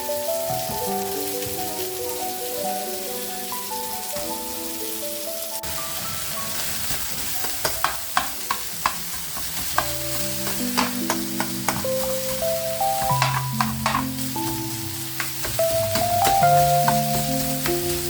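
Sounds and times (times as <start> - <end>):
background music: 0.0 - 18.0
food sizzling in a pan: 0.0 - 18.0
utensil knocking against pan: 7.2 - 18.0.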